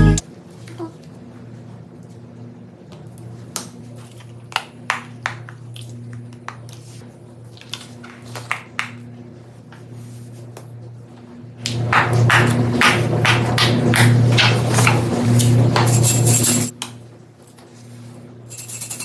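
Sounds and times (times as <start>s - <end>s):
low steady hum: 0.0s - 0.3s.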